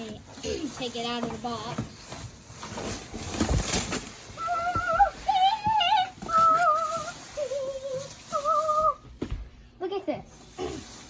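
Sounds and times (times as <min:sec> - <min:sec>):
cardboard box rustling and scraping: 0:00.8 - 0:08.6.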